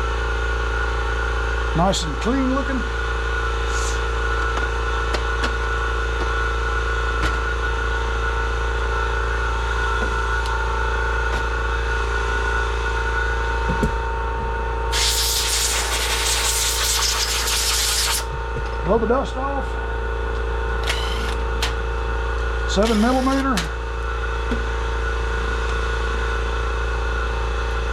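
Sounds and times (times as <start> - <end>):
machine hum: 0.0 - 27.9
compressed air hissing: 14.9 - 18.3.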